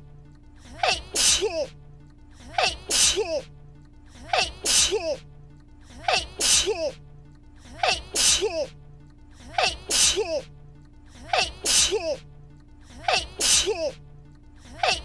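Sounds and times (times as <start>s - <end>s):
woman sneezing: 0.8s - 1.7s, 4.4s - 5.2s, 6.1s - 7.0s, 7.8s - 8.7s, 9.6s - 10.5s, 11.4s - 12.2s.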